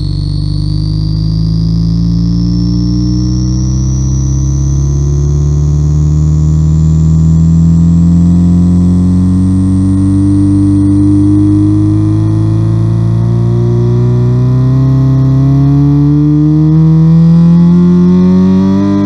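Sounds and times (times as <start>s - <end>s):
electronic buzzing engine tone: 0.0s - 19.0s.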